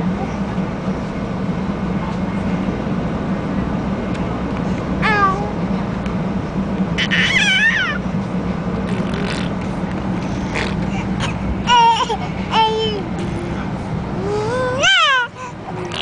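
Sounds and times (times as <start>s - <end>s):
train carriage low hum: 0.0s - 16.0s
high-pitched squealing calls: 7.0s - 8.0s.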